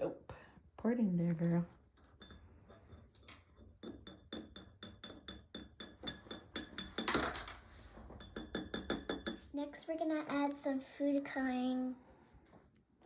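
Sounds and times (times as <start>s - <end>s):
spoon scraping glass: 2.0s - 7.1s
spoon clinking against glass: 2.1s - 7.2s, 8.2s - 9.4s.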